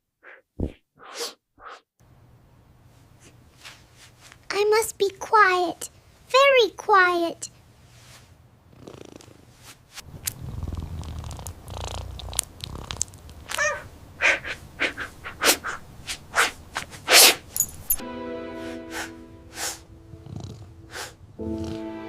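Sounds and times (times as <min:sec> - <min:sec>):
low purr-like rumble: 0:10.1 - 0:13.8, 0:20.1 - 0:21.8
sharp sniffs and snorts: 0:10.2 - 0:18.0, 0:18.9 - 0:21.8.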